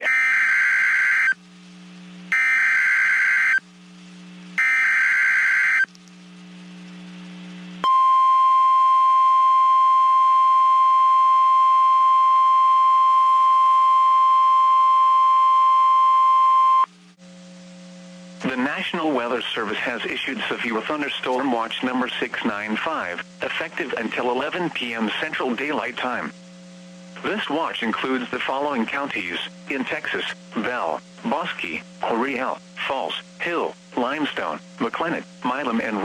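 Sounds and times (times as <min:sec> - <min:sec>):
digital data tone bursts: 0:00.0 - 0:01.4, 0:02.3 - 0:03.6, 0:04.6 - 0:05.9.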